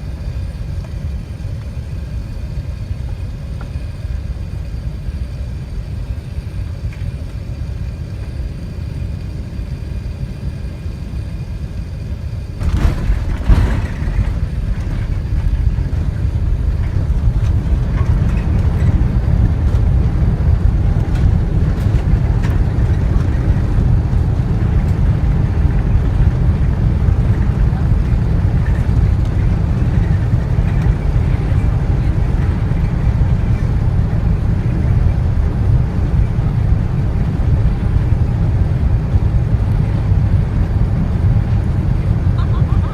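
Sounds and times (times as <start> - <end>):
aircraft engine and airflow rumble: 0.0 - 42.9
wheels touching down: 12.6 - 25.2
landing roll rumble: 12.6 - 39.3.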